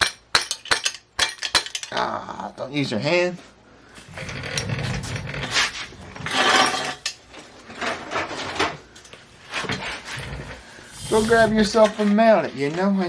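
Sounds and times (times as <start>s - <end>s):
metal scraping and rattling: 4.0s - 12.4s.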